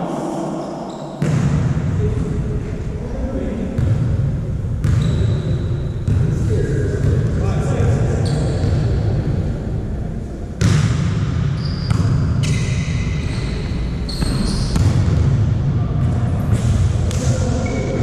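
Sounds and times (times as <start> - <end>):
shoe squeaks: 5.0 - 5.6, 8.2 - 8.7, 11.6 - 14.8.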